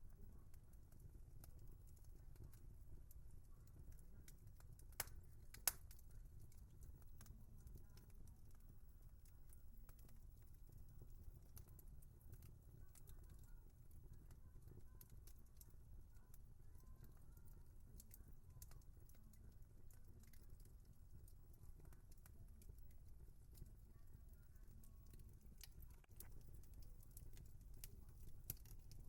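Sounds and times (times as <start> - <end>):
low background noise: 0.0 - 29.0
wood fire crackling: 0.0 - 29.0.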